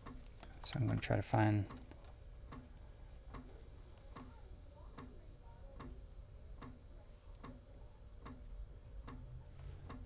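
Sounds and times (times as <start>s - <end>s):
faint mechanical ticking: 0.0s - 10.0s.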